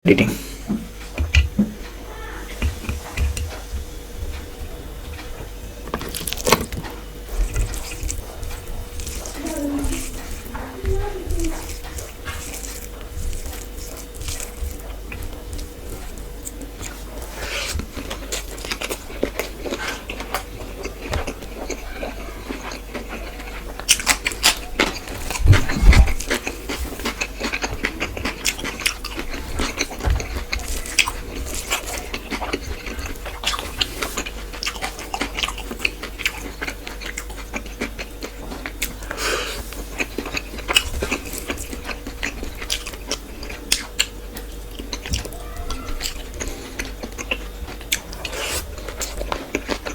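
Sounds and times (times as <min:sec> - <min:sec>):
knocks and thumps: 0:00.7 - 0:02.0
close-miked chewing: 0:00.9 - 0:49.9.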